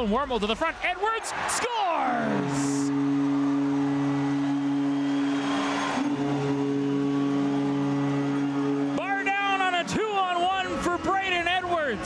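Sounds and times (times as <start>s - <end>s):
crowd cheering: 0.8s - 11.4s
goal horn low note: 1.9s - 10.0s.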